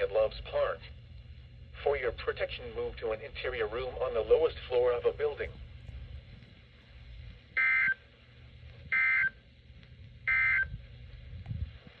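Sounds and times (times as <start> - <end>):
screechy modem-like data bursts: 7.5 - 8.1, 8.9 - 9.5, 10.2 - 10.8.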